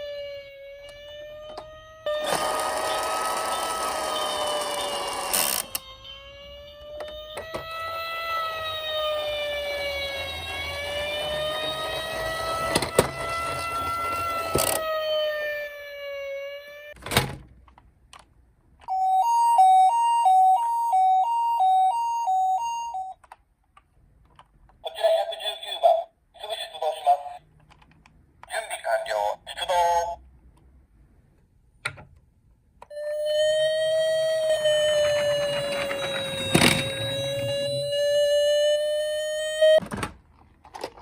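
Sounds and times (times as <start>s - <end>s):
slow wailing toy siren: 0.0s - 17.0s, 18.8s - 23.2s, 32.8s - 39.8s
two-tone hi-lo siren: 0.0s - 17.0s, 18.9s - 23.2s, 32.9s - 39.8s.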